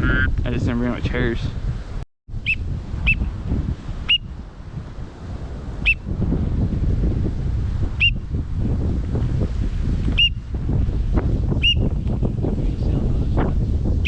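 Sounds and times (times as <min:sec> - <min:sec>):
wind rumble on microphone: 0:00.0 - 0:14.0
high whistled peeps: 0:02.4 - 0:03.3, 0:04.1 - 0:04.3, 0:05.8 - 0:06.1, 0:10.1 - 0:10.4, 0:11.6 - 0:11.9.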